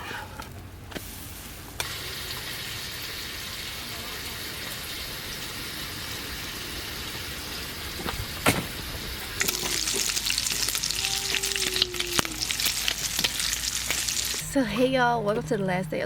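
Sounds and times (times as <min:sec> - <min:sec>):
food sizzling in a pan: 0:09.4 - 0:14.4.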